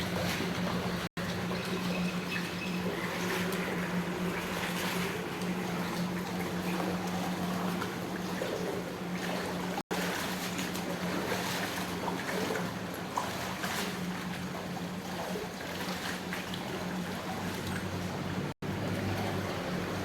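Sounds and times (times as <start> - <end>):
pool water splashing: 0.0 - 20.0.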